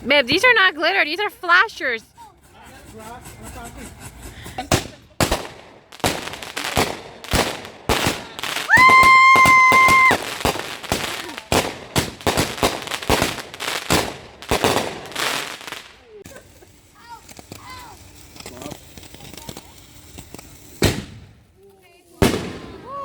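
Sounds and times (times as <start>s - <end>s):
fireworks popping and cracking: 1.5s - 23.0s
shrill firework whistle: 8.7s - 10.3s.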